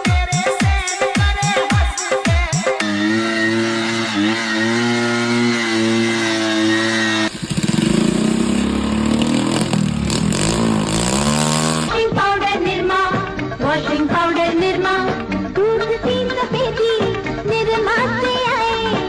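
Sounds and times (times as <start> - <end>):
engine revving: 2.8 - 12.0.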